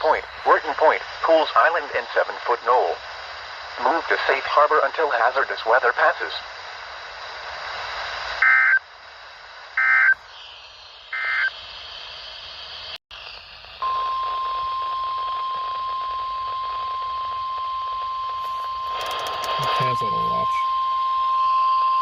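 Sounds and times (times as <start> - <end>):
radio hiss: 0.0 - 20.6
steady warning alarm tone: 11.1 - 11.6, 13.8 - 22.0
warbling data bursts: 11.1 - 11.6, 18.5 - 20.6.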